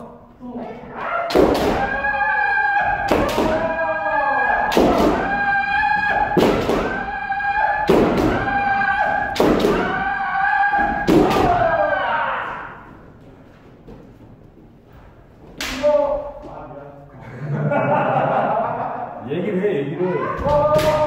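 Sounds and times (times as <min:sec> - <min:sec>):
person shouting: 0:00.0 - 0:12.9, 0:20.0 - 0:21.0.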